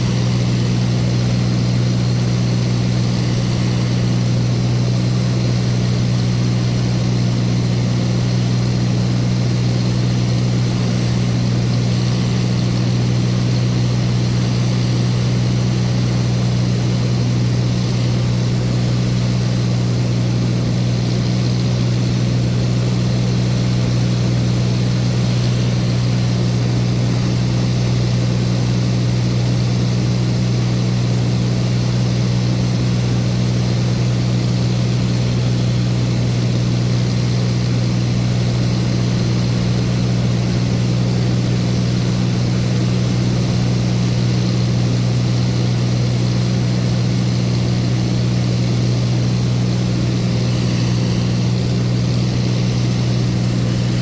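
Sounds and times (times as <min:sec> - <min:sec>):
propeller aircraft engine droning: 0:00.0 - 0:54.0.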